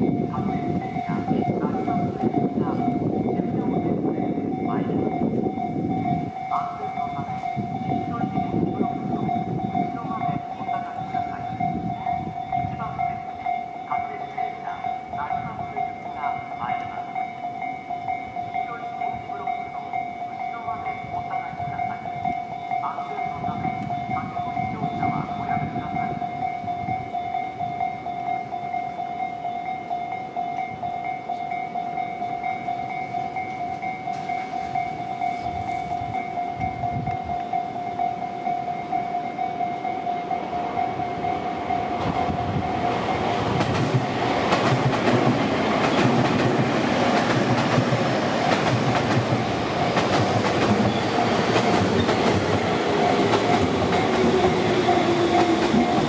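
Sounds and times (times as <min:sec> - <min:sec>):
level crossing bell ringing: 0:00.0 - 0:43.5
train passing: 0:00.0 - 0:56.0.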